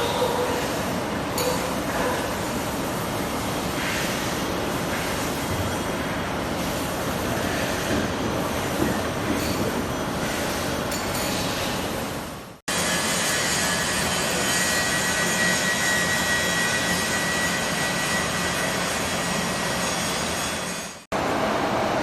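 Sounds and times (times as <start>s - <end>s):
metal-cutting machine whirring: 12.7s - 21.0s.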